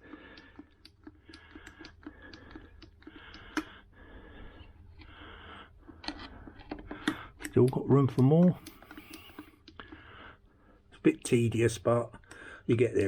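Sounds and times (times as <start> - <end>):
hand oil pump clicks and hiss: 0.0 - 3.9, 5.9 - 10.1.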